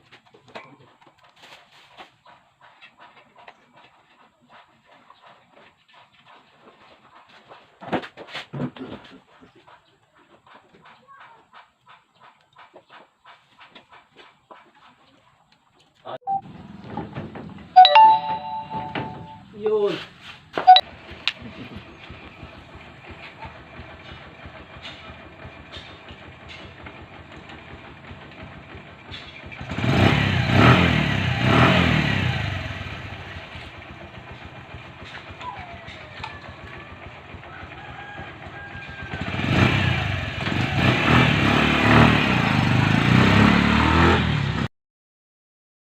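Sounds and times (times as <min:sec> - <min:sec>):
motorcycle engine idling and revving: 0:16.4 - 0:17.8, 0:19.3 - 0:44.7.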